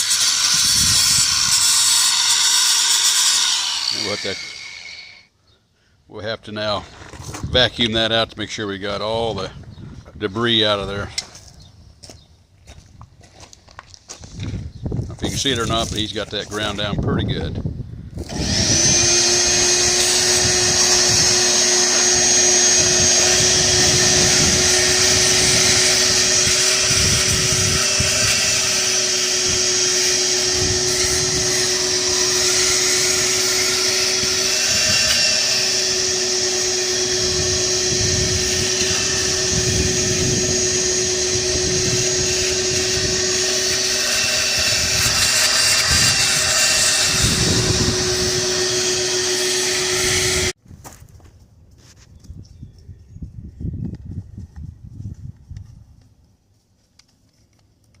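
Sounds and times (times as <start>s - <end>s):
shop vacuum motor whine: 0.0s - 5.3s, 18.2s - 50.6s.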